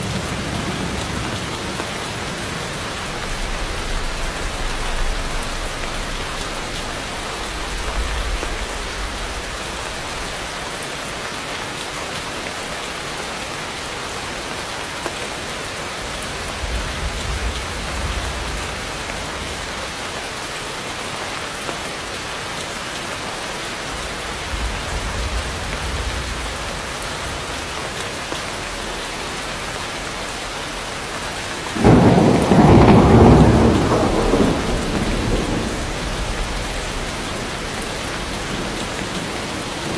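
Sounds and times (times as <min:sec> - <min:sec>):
thunder rumbling: 0:00.0 - 0:10.6, 0:16.0 - 0:20.0, 0:23.9 - 0:29.0, 0:31.6 - 0:39.9
heavy rain on foliage: 0:00.0 - 0:39.9
loud thunder clap: 0:16.4 - 0:19.6, 0:24.3 - 0:27.8, 0:31.8 - 0:39.9.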